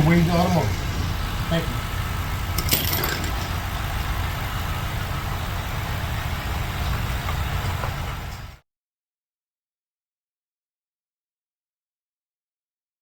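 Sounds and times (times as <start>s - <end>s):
car engine idling: 0.0s - 8.6s.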